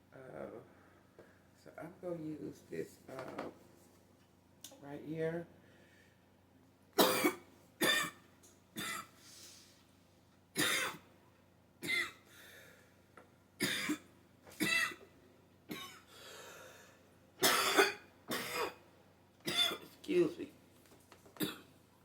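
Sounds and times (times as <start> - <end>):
woman clearing throat: 7.0 - 8.2, 17.4 - 18.8, 21.4 - 21.7
woman coughing: 7.0 - 8.2, 8.8 - 9.1, 10.6 - 11.0, 13.6 - 14.0, 14.6 - 15.0, 17.4 - 18.8, 19.5 - 19.9, 21.4 - 21.7.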